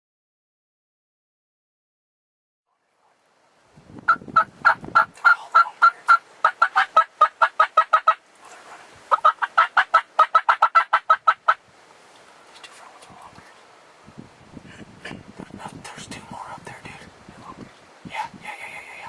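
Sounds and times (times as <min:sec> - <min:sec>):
turkey calls: 0:04.1 - 0:11.6.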